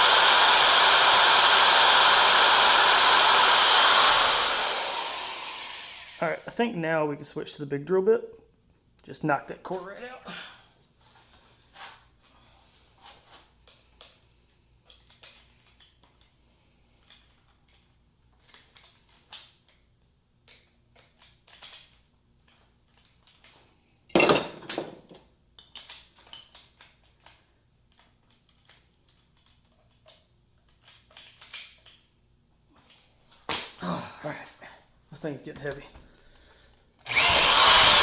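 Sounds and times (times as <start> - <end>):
metal tools clinking: 23.0 - 28.8.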